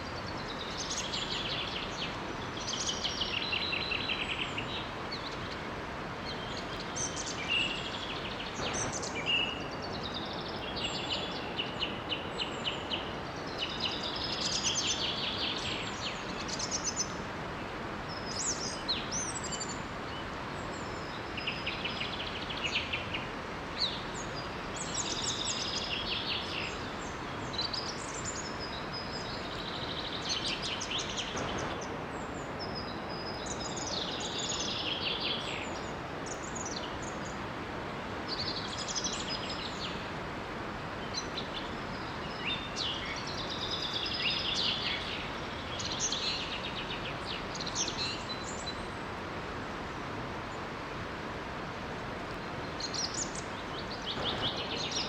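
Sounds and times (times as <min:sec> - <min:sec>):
small waterfall rushing: 0:00.0 - 0:55.0
birds singing rapid phrases: 0:52.6 - 0:55.0.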